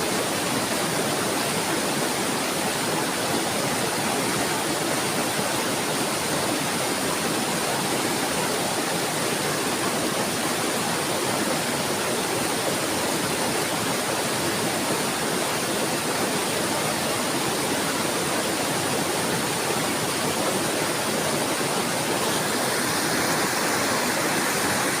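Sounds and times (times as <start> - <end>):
flowing water rushing: 0.0 - 25.0.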